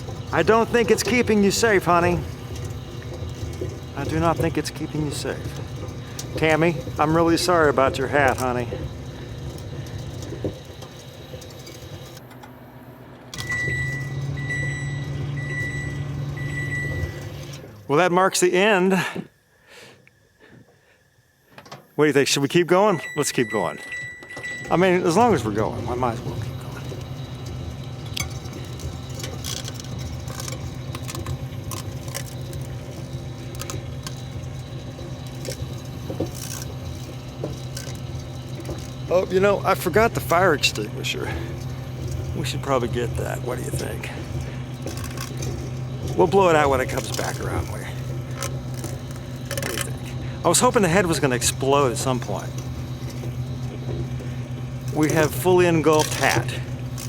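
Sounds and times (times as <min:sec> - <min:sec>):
electrical arcing crackles and snaps: 0:00.0 - 0:12.4, 0:24.8 - 0:57.0
microwave oven humming: 0:00.0 - 0:57.0
long high beeps: 0:13.4 - 0:17.5, 0:22.7 - 0:26.4.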